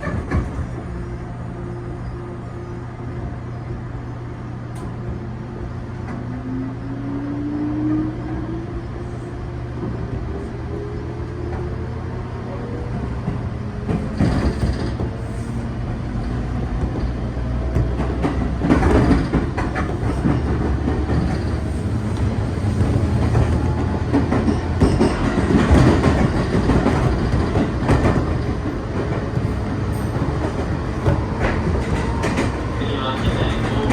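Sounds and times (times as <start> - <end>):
train clatter: 0.0 - 1.0, 12.6 - 33.9
electric train whine: 0.4 - 33.9.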